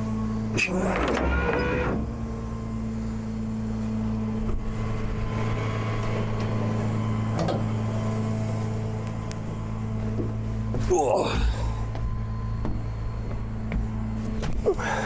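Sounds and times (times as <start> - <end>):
truck engine idling: 0.0 - 15.0.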